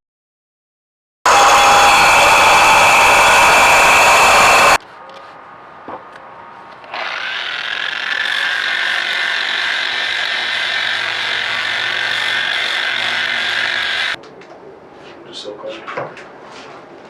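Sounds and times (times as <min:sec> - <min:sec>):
blowing power tool: 0:01.3 - 0:04.8, 0:07.0 - 0:14.2
power tool motor whining: 0:01.3 - 0:04.8, 0:06.9 - 0:14.2.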